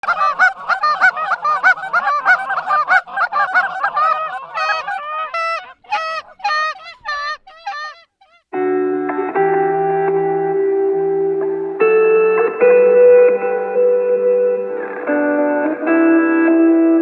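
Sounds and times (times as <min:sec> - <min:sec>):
geese honking: 0:00.0 - 0:08.4.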